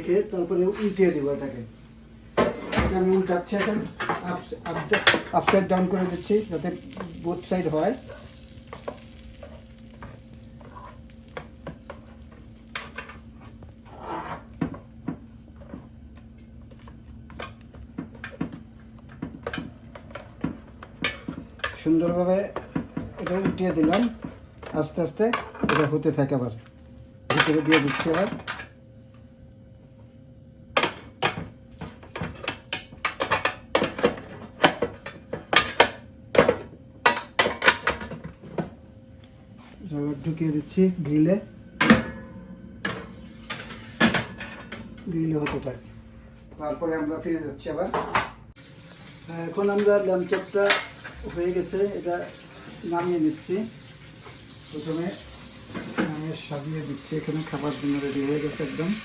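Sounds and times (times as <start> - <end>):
light sizzling: 0.0 - 27.5, 48.5 - 59.0
utensil scraping grill tray: 12.8 - 14.6.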